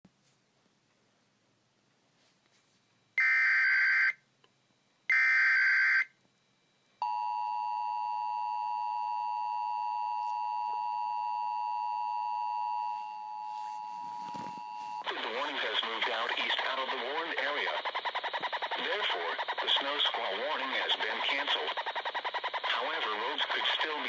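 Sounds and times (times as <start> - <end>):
digital data bursts: 15.0 - 24.0.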